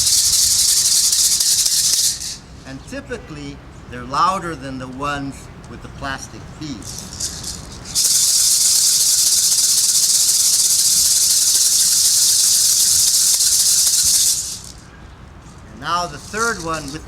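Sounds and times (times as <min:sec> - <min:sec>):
gourd rattles shaken: 0:00.0 - 0:02.6, 0:06.8 - 0:14.8, 0:15.5 - 0:17.0.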